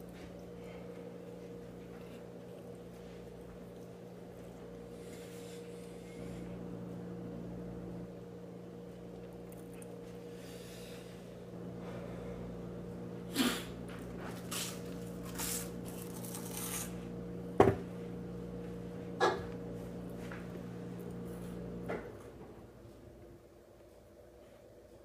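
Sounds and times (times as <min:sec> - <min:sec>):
steady low hum: 0:00.0 - 0:25.0
person chewing toast: 0:14.0 - 0:17.0.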